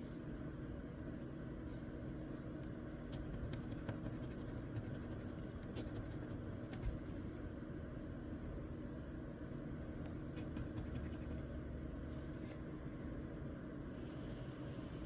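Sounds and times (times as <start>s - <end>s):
steady low hum: 0.0s - 15.0s
scratching lottery ticket: 3.0s - 7.1s, 10.3s - 11.6s.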